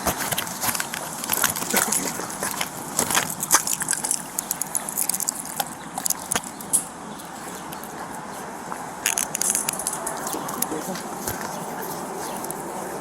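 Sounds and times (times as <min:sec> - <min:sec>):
clothing rubbing on microphone: 0:07.3 - 0:13.0.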